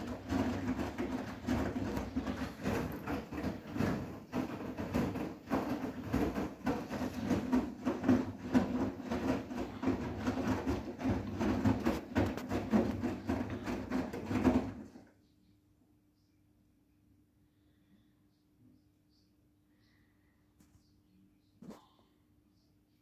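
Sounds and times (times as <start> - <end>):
laundry thudding in drum: 0.0 - 15.1
washing machine drum turning: 0.0 - 15.1.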